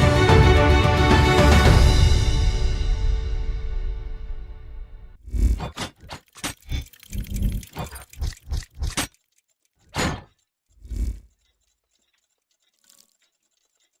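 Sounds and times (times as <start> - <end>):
soundtrack music with pulsing bass: 0.0 - 5.1.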